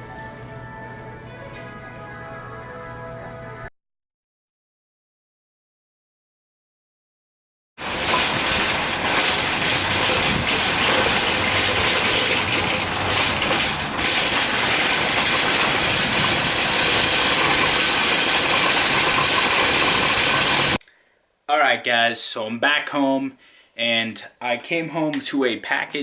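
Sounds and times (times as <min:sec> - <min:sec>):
vehicle rushing noise: 0:07.8 - 0:20.8.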